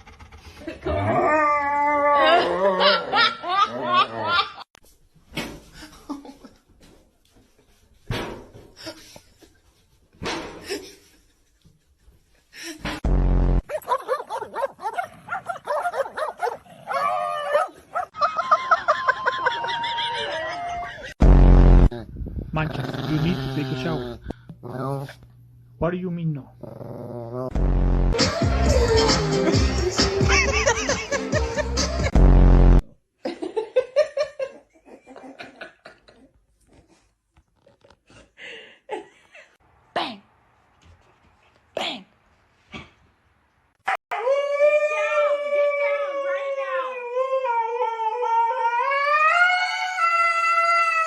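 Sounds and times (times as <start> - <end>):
loud low buzz: 13.0 - 13.6, 21.2 - 22.3, 27.5 - 28.2, 32.0 - 32.9
very loud low blast: 13.0 - 13.6, 21.2 - 22.2
person laughing: 18.2 - 21.2, 29.3 - 32.2, 33.2 - 36.4
loud music: 27.6 - 32.8.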